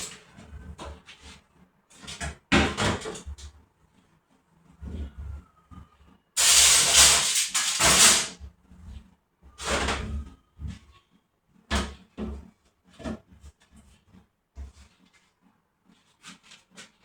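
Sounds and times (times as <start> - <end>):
loud hissing rush: 6.4 - 8.3.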